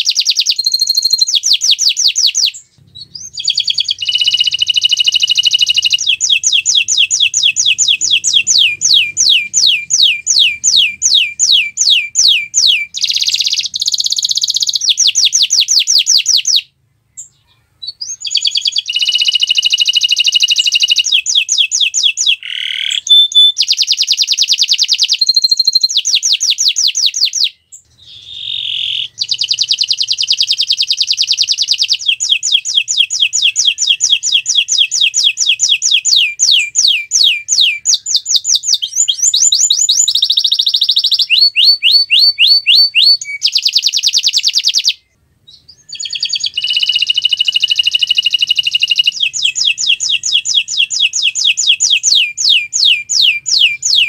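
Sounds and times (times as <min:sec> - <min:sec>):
canary singing trills: 0:00.0 - 0:54.0.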